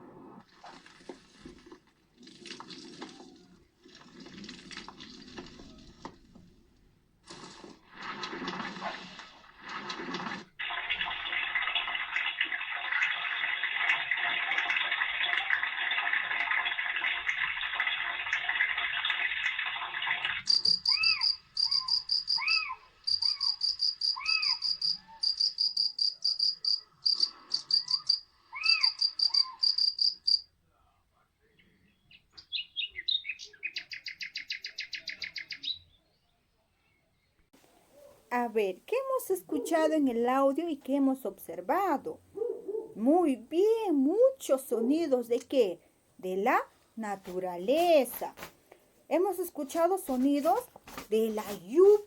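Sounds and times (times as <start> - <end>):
whistled bird calls: 20.4 - 25.4, 27.2 - 30.4, 32.1 - 36.1
high chirps: 20.4 - 30.4.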